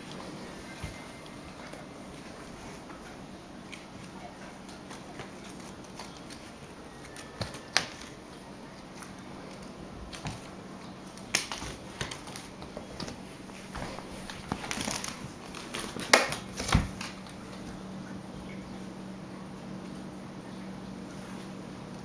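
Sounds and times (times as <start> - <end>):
bird toy clicks and rustles: 14.3 - 17.1.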